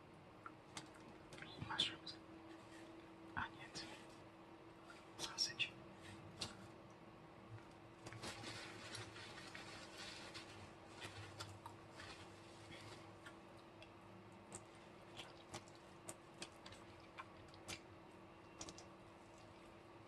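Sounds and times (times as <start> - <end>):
low steady hum: 0.0 - 20.0
mouth clicks and chewing: 13.2 - 19.8.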